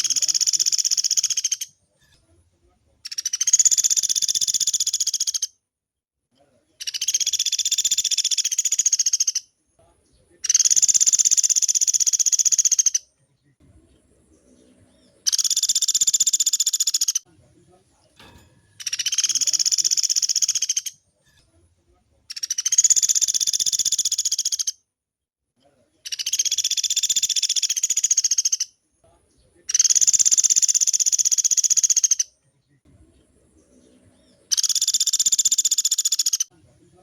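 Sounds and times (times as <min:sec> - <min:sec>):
woodpecker rattling rolls: 0:18.3 - 0:20.8.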